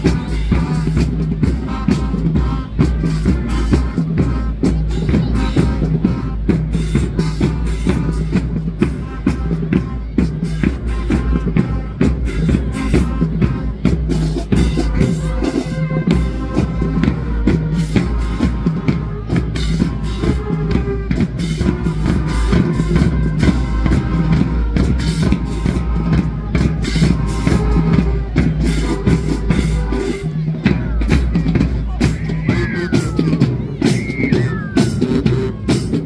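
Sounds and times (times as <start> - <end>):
loud music with drum beat: 0.0 - 36.0.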